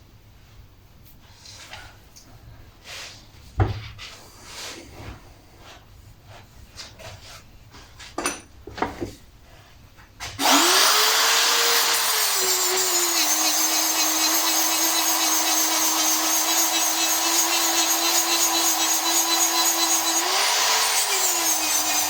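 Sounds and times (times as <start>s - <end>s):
metal tools knocked and handled: 8.2s - 8.9s
power tool grinding metal: 10.4s - 22.0s.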